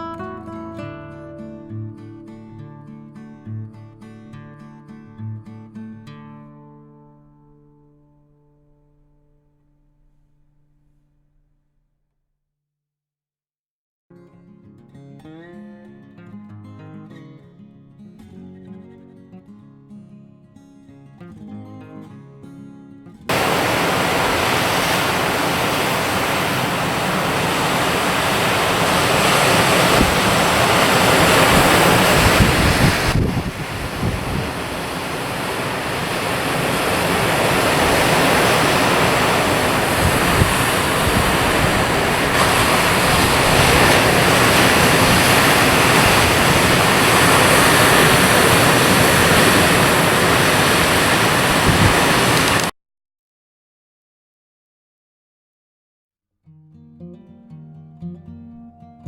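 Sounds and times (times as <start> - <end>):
sea surf washing on shore: 23.3 - 52.7
wind rushing over microphone: 23.3 - 52.7.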